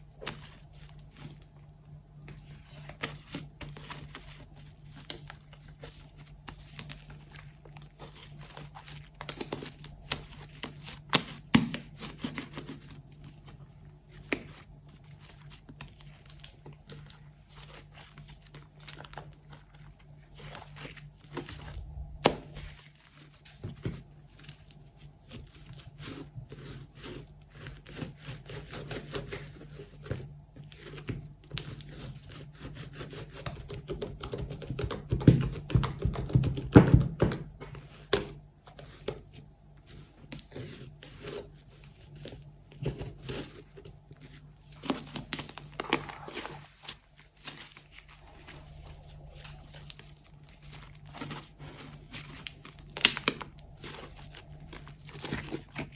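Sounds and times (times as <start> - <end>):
slime squishing: 0.0 - 55.9
low hum: 21.5 - 22.9, 48.0 - 55.9.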